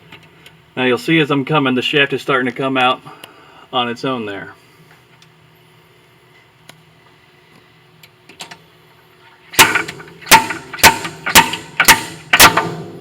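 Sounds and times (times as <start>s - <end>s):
slide hammer metallic strikes: 9.6s - 13.0s.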